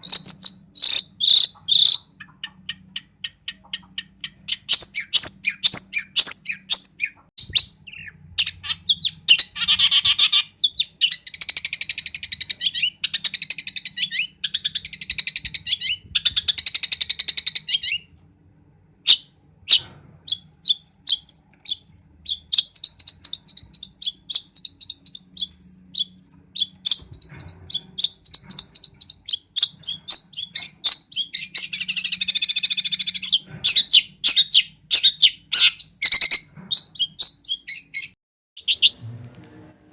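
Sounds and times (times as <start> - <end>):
shrike singing: 38.6 - 39.7.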